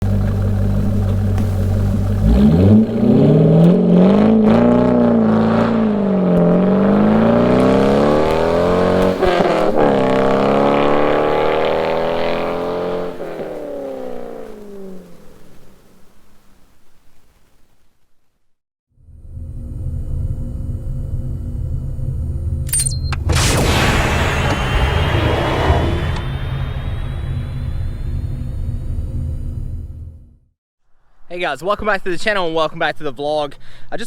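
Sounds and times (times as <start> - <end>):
car engine revving: 0.0 - 16.2, 23.4 - 30.2.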